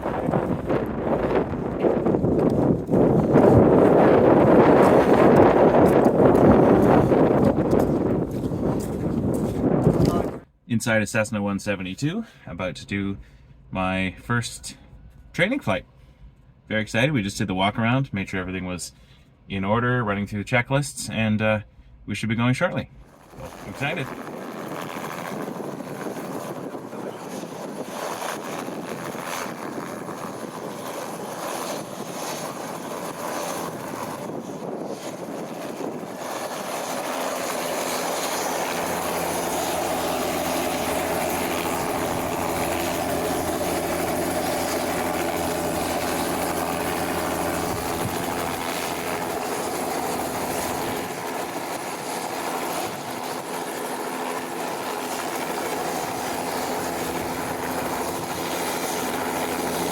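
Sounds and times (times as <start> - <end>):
airplane engine and propeller: 0.0 - 10.5, 23.0 - 59.9.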